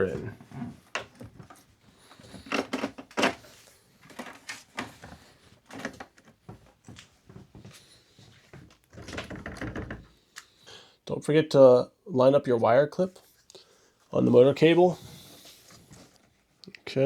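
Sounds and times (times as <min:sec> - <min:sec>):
clicks knocks and scrapes: 0:02.2 - 0:06.3
rubbing and rustling: 0:14.3 - 0:16.6.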